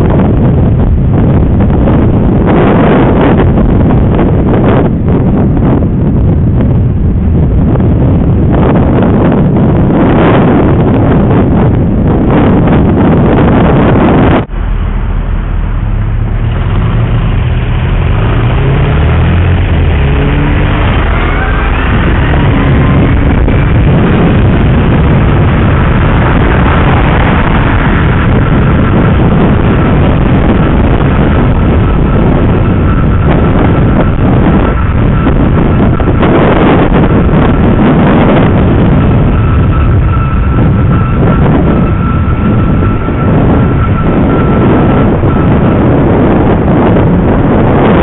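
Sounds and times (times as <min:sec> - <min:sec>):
wind rushing over microphone: 0:00.0 - 0:48.0
vehicle tone rising in pitch: 0:12.7 - 0:48.0.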